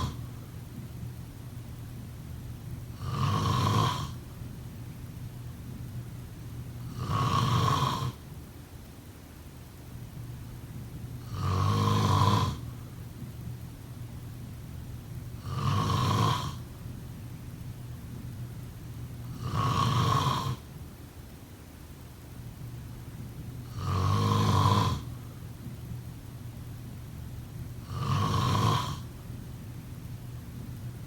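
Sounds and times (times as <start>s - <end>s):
person snoring: 0.0s - 0.2s, 3.0s - 4.2s, 6.9s - 8.2s, 11.2s - 12.6s, 15.4s - 16.6s, 19.3s - 20.6s, 23.7s - 25.1s, 27.8s - 29.1s.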